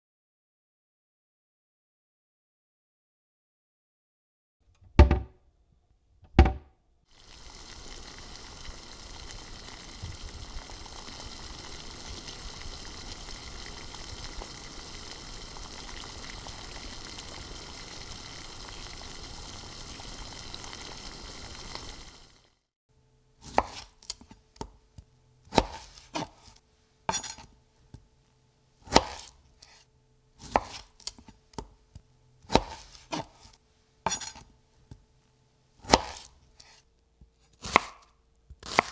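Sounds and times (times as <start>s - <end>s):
sharp knocks: 5.0s - 5.4s
steady hiss: 7.1s - 22.4s
knife chopping on cutting board: 23.4s - 24.8s, 25.5s - 26.5s, 27.1s - 27.5s, 28.8s - 29.8s, 30.4s - 31.8s, 32.5s - 33.5s, 34.1s - 34.5s, 35.8s - 36.8s, 37.6s - 38.9s.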